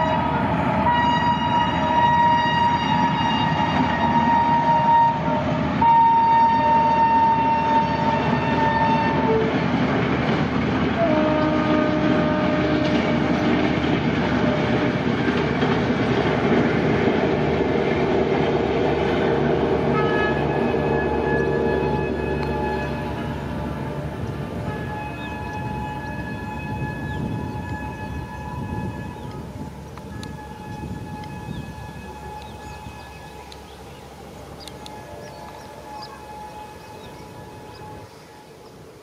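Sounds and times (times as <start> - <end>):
locomotive horn: 0.0 - 38.8
train wheels clattering on rails: 7.3 - 38.3.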